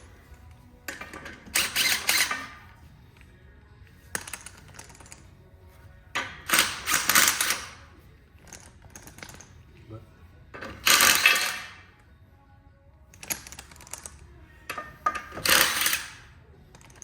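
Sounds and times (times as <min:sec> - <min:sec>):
ratchet wrench clicking: 0:00.9 - 0:02.6, 0:06.4 - 0:07.8, 0:10.7 - 0:11.8, 0:13.1 - 0:17.0.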